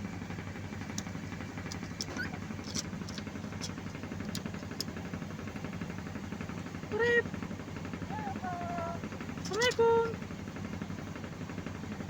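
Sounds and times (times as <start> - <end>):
steady low hum: 0.0 - 12.0
bird squeaking: 2.0 - 2.5, 8.1 - 10.2.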